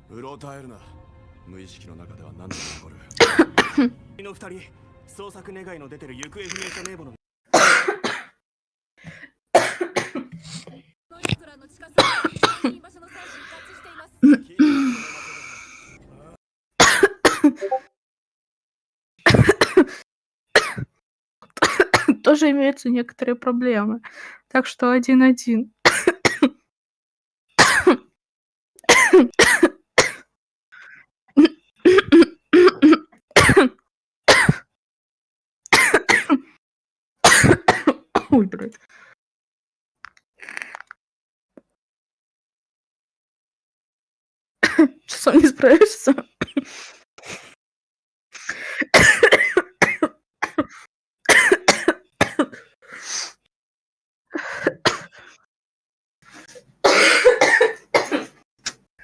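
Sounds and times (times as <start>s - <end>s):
woman coughing: 3.2s - 3.9s, 7.6s - 8.4s, 9.6s - 10.7s, 12.0s - 13.4s, 14.2s - 14.9s, 16.8s - 17.8s, 19.2s - 20.0s, 20.6s - 20.9s, 21.6s - 22.2s, 25.9s - 26.6s, 27.6s - 28.1s, 28.9s - 30.2s, 31.4s - 34.7s, 35.8s - 36.5s, 37.2s - 38.6s, 44.6s - 46.7s, 48.8s - 52.8s, 54.6s - 55.2s, 56.8s - 58.4s.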